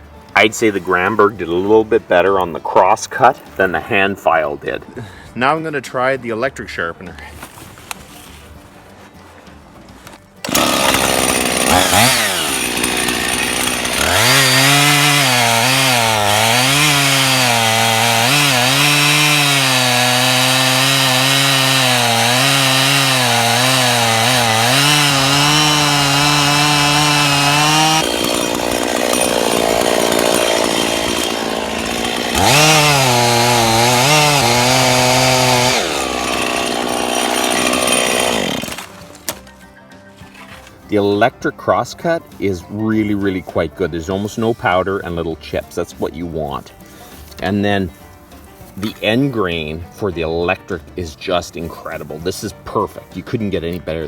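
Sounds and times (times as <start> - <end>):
chainsaw cutting wood: 10.4 - 39.5.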